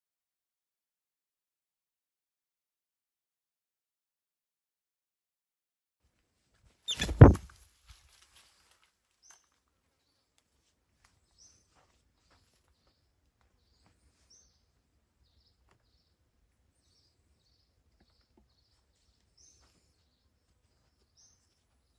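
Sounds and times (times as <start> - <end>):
faint high bird chirps: 6.9 - 7.4
loud thud: 6.9 - 7.5.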